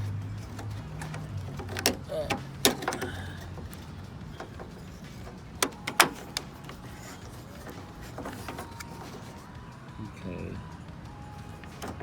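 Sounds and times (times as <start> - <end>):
car door lock clicks: 0.4 - 9.5, 11.5 - 12.0.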